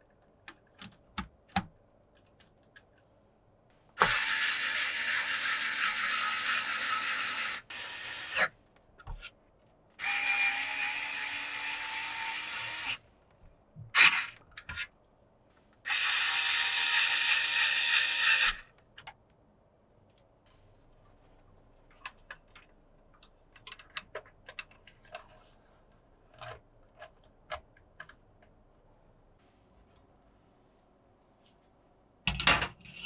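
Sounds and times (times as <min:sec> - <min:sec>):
electric screwdriver running: 0:04.0 - 0:08.5, 0:10.0 - 0:13.0, 0:15.9 - 0:18.6.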